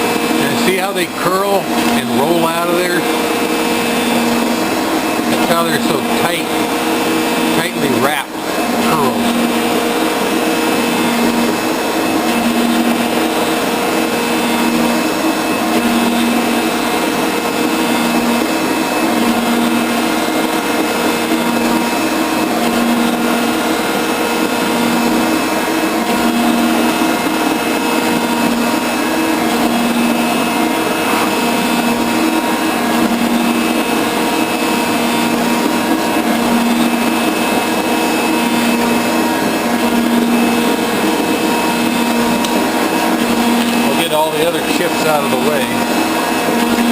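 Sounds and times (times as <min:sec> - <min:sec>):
metal shaper cutting steel: 0:30.3 - 0:31.8.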